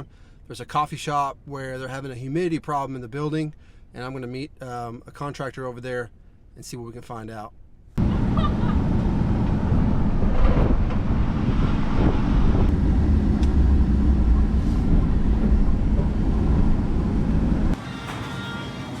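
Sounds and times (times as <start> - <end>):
vehicle engine and road noise: 7.6 - 17.9.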